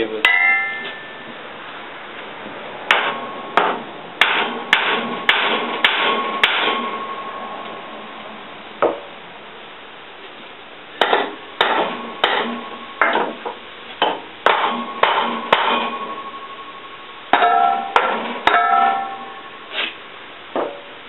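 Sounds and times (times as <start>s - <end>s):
hammer striking steel: 0.2s - 1.3s, 2.9s - 7.4s, 11.0s - 16.6s, 17.3s - 19.5s.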